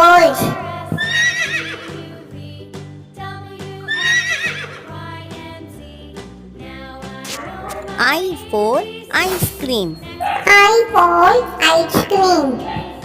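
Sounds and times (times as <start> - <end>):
children's music with steady beat: 0.0 - 13.0
horse whinnying: 1.0 - 2.0, 3.9 - 4.9.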